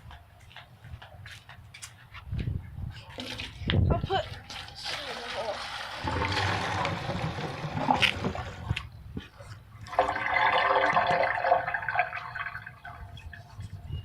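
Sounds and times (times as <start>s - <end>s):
toilet water flushing: 4.4s - 8.8s, 9.9s - 12.9s.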